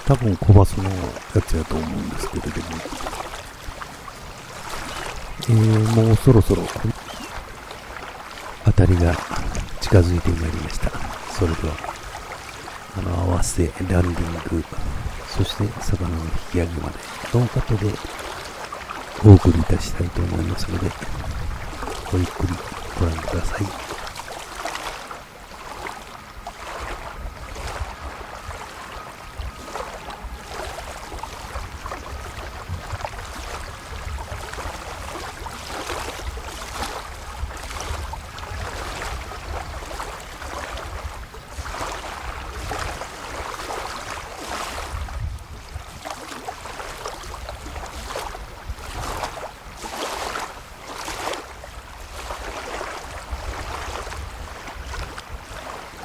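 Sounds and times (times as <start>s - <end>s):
lake waves lapping at shore: 0.0s - 56.0s
wind buffeting microphone: 8.6s - 18.3s, 19.2s - 24.4s, 26.2s - 49.9s, 51.6s - 56.0s.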